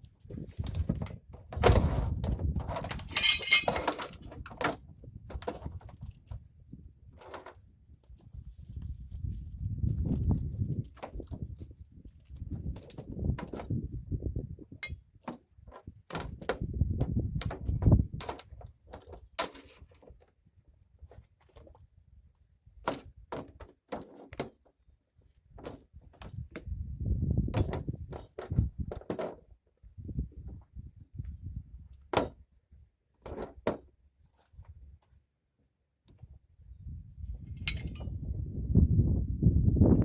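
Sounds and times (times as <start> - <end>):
low rumbling handling noise: 0.1 - 4.1
metal hand tools clinking: 2.9 - 4.2.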